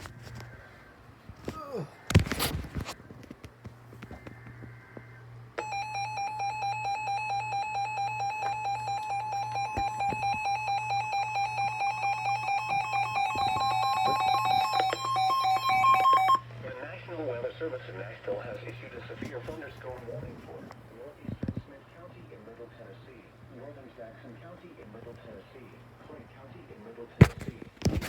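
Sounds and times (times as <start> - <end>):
pulsing two-pitch electronic alarm beep: 5.6 - 16.4.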